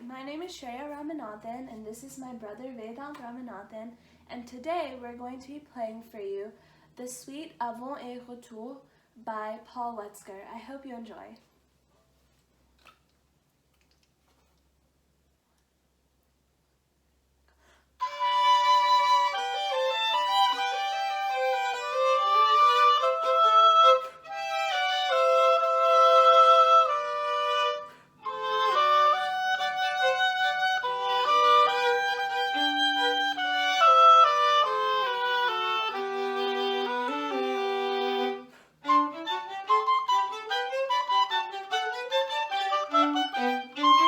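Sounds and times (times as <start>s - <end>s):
classical instrumental duet: 18.0s - 44.0s.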